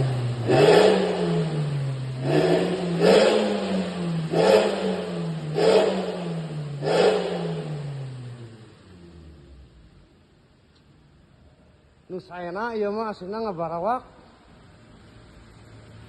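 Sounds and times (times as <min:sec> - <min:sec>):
motorcycle engine revving: 0:00.0 - 0:09.6.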